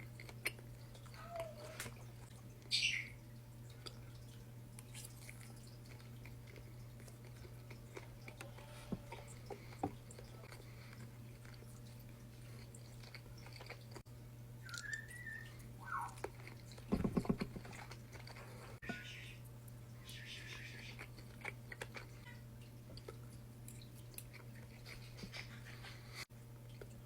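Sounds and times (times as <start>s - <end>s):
bird whistles and chirps: 2.7s - 3.2s, 14.6s - 16.2s, 20.0s - 21.0s.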